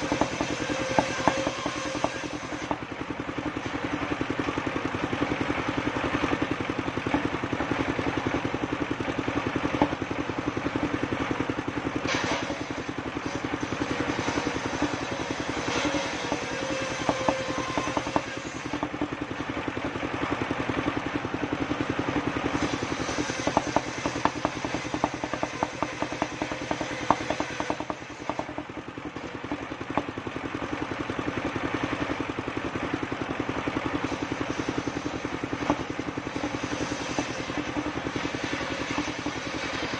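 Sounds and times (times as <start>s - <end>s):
sawmill engine running: 0.0s - 39.9s
sharp clicking and clatter: 34.1s - 39.9s.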